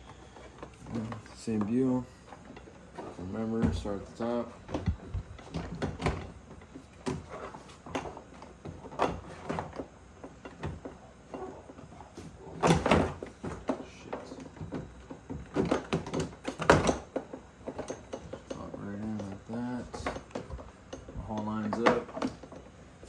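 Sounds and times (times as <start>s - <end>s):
handling knocks: 0.0s - 6.4s.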